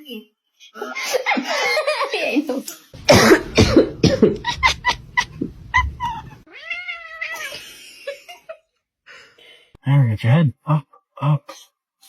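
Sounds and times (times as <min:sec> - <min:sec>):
cat meowing: 0:05.7 - 0:07.6.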